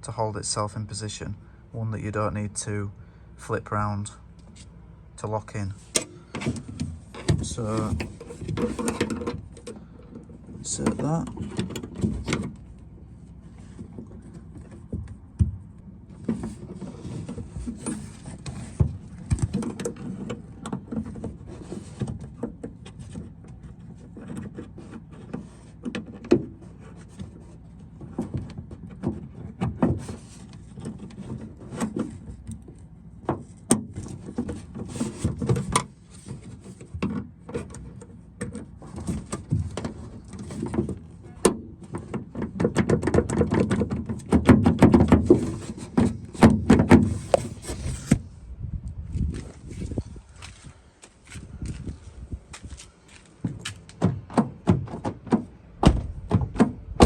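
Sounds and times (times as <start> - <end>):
clicks and taps inside car door: 28.0 - 48.2, 52.6 - 57.0.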